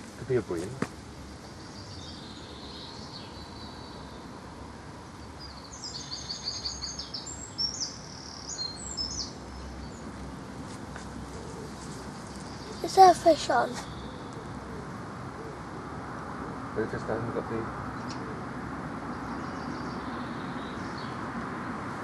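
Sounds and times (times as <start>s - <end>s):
outdoor background noise: 0.0s - 22.0s
songbird chirping: 0.0s - 22.0s.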